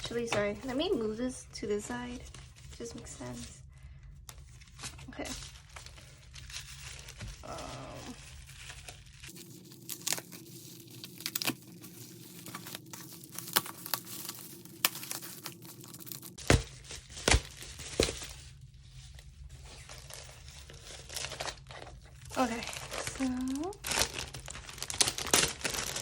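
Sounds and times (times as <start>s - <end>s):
packaging being torn open: 5.6s - 18.3s, 19.9s - 26.0s.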